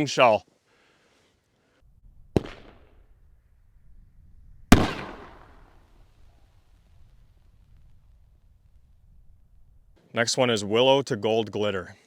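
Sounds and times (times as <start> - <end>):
firework bangs: 2.1 - 3.3, 4.5 - 6.2.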